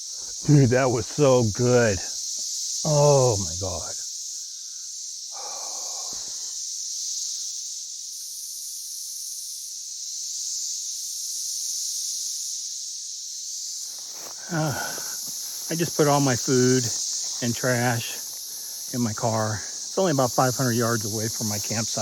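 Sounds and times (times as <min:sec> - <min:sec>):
insect chorus: 0:00.0 - 0:22.0
person breathing softly: 0:05.4 - 0:06.6, 0:14.4 - 0:15.3.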